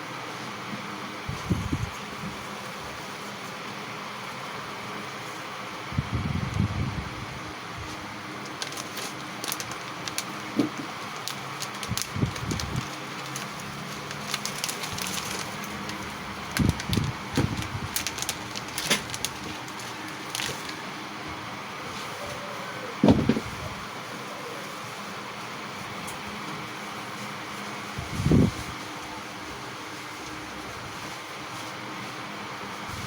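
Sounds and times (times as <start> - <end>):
soft thumps: 23.0 - 23.6.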